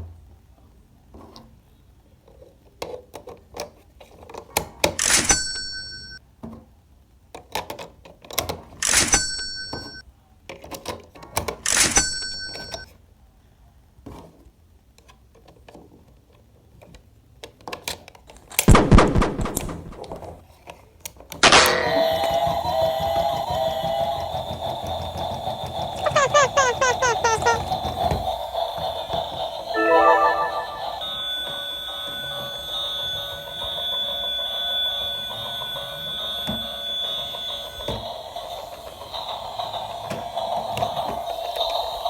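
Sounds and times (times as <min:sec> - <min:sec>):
pitched tuneful sound: 0:29.8 - 0:31.2.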